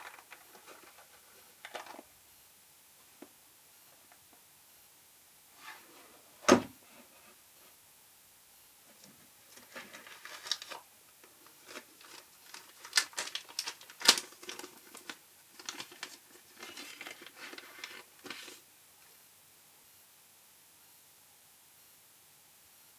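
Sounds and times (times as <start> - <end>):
packaging crinkling and rustling: 0.0 - 2.1, 9.5 - 18.7.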